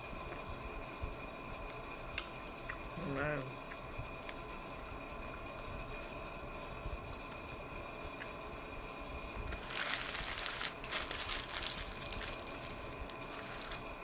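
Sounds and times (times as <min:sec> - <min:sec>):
paper wrapper crinkling: 0:09.6 - 0:13.9.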